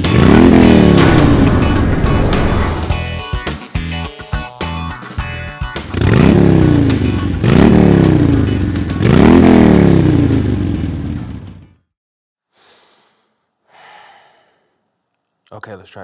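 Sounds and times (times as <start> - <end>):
motorcycle engine revving: 0.0 - 3.1, 5.8 - 11.7
music: 0.0 - 9.8.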